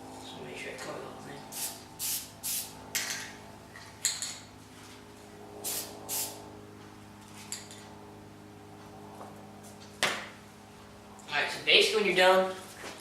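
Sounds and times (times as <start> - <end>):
spray paint can hissing bursts: 1.5 - 2.7, 5.6 - 6.4.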